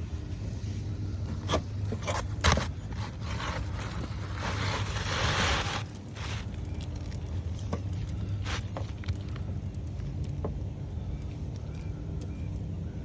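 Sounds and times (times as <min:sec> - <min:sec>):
scraping on roof shingles: 0:01.4 - 0:06.6.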